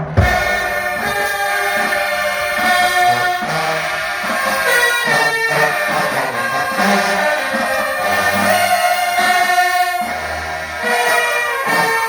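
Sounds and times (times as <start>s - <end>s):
brass section playing chords: 0.0s - 2.8s.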